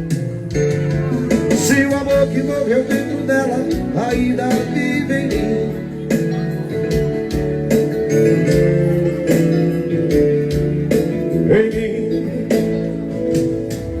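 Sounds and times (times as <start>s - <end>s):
electronic keyboard music: 0.0s - 14.0s.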